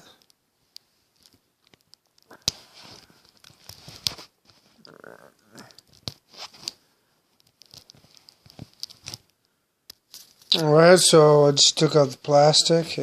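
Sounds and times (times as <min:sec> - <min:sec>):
plastic shrink-wrap crinkling: 0:01.1 - 0:04.9.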